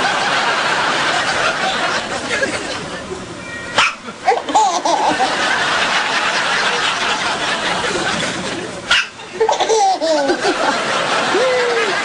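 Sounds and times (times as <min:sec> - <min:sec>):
soft breathy laughter: 0:04.1 - 0:12.0.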